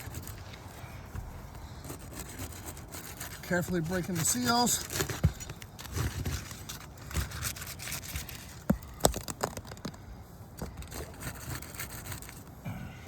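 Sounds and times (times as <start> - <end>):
shingle tabs crackling and tearing: 1.5 - 12.5.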